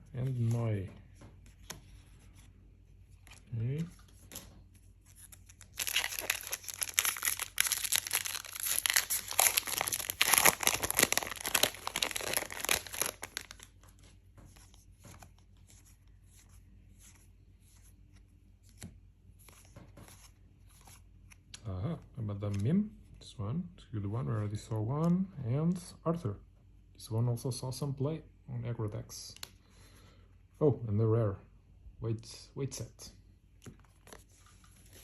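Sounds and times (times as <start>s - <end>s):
foil wrapper tearing and crinkling: 5.5s - 13.7s.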